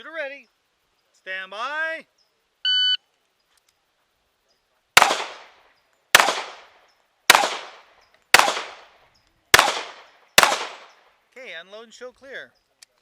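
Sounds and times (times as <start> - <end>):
pistol shots with echo: 5.0 - 6.7, 7.3 - 8.9, 9.5 - 11.0.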